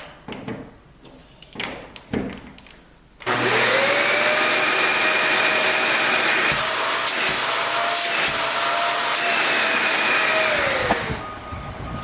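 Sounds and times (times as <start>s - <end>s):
vacuum cleaner motor whine: 3.3s - 12.0s.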